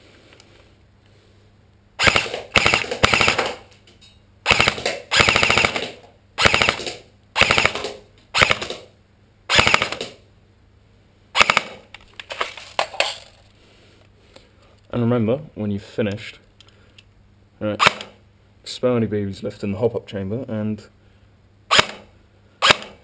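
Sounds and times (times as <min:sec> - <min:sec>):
airsoft rifle firing bursts: 0:02.0 - 0:03.7, 0:04.5 - 0:08.9, 0:09.5 - 0:10.2, 0:11.4 - 0:11.8, 0:21.7 - 0:23.0.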